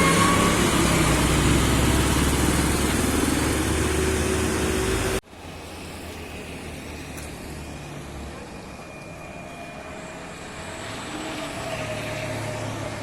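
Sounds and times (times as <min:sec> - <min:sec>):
heavy truck engine running: 0:00.0 - 0:09.5
road noise: 0:00.0 - 0:13.0.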